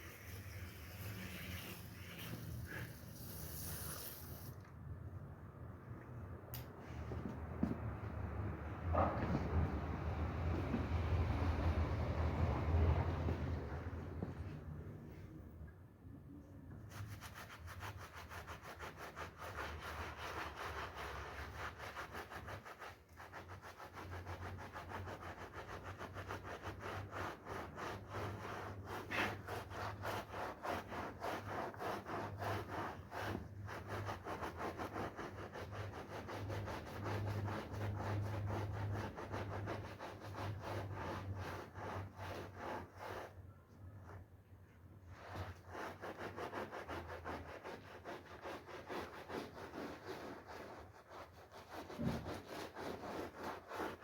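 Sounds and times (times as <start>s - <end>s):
brush scrubbing wet carpet: 0.0s - 4.5s, 16.8s - 43.4s, 45.1s - 54.0s.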